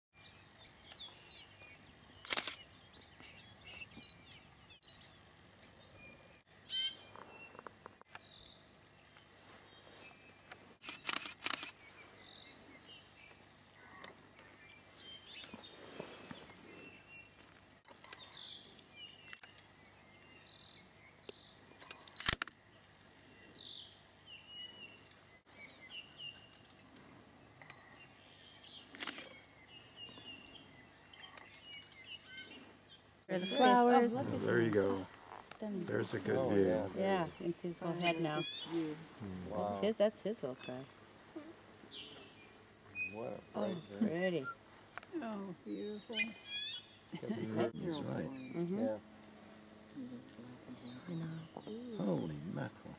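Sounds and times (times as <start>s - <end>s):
camera shutter clicks: 2.2s - 2.6s, 10.8s - 11.8s, 22.1s - 22.6s, 28.9s - 29.3s
bird chirps and squeaky calls: 6.7s - 7.6s, 32.2s - 32.6s, 38.0s - 38.8s, 42.0s - 44.6s, 45.9s - 47.1s.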